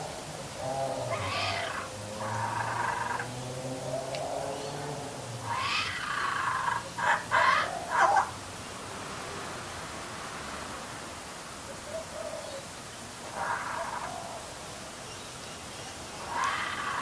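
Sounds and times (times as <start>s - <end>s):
baby bird low gurgling drone: 0.0s - 6.9s
bird rasping calls: 0.6s - 3.3s, 5.5s - 8.3s, 16.2s - 17.0s.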